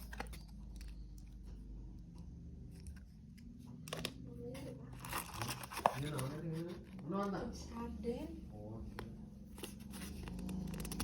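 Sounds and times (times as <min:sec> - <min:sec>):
packaging rustling: 0:05.0 - 0:06.9.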